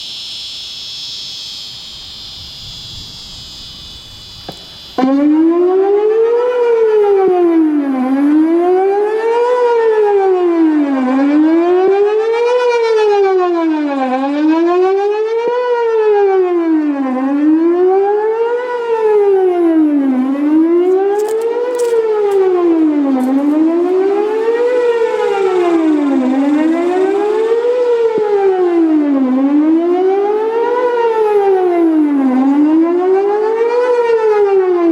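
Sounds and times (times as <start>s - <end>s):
cicadas buzzing: 0.0s - 7.3s, 18.4s - 31.8s
tornado siren wailing: 0.8s - 34.9s.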